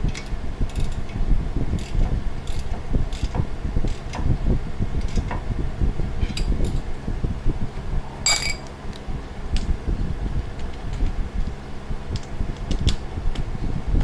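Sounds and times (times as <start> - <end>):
cooling fan humming: 0.0 - 14.0
metal tools clinking: 8.2 - 8.7.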